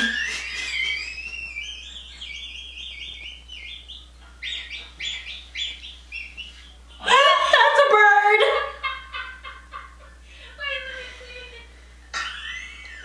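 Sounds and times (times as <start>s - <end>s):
high-pitched wheezing laugh: 0.0s - 2.1s.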